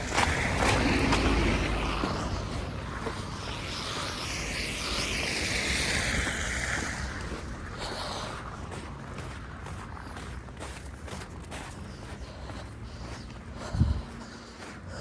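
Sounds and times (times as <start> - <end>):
tyre hiss on wet street: 0.0 - 8.6.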